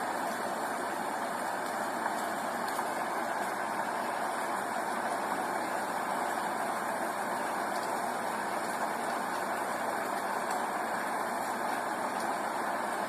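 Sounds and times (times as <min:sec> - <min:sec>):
steady rain: 0:00.0 - 0:13.0.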